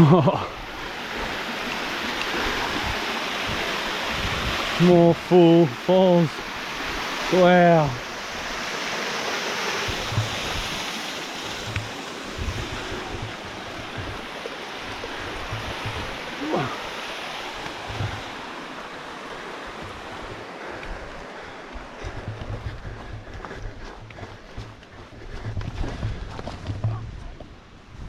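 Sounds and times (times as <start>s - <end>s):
waterfall rushing: 0.0s - 22.4s
low thumps on microphone: 9.8s - 16.3s, 17.8s - 18.4s, 22.0s - 28.0s.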